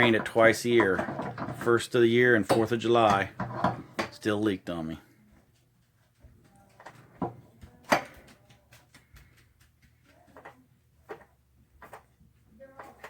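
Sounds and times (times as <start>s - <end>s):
knocks and clanks on metal pipes: 0.0s - 1.8s, 2.4s - 4.2s.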